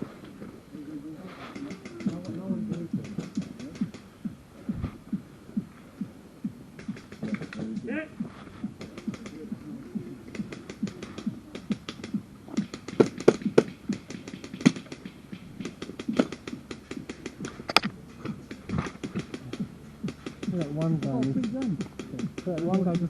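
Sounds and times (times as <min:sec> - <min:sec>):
airsoft guns firing: 0:10.4 - 0:17.6.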